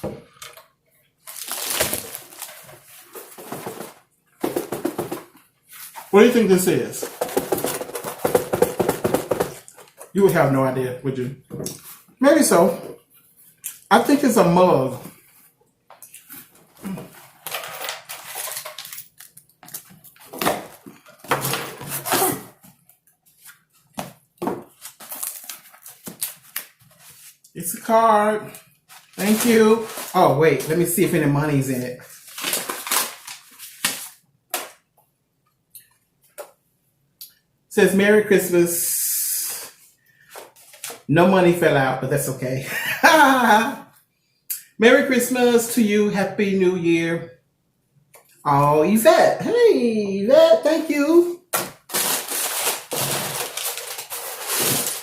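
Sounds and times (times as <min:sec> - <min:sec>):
gift packaging rustling: 0:01.2 - 0:10.2, 0:16.2 - 0:34.7, 0:50.4 - 0:55.0.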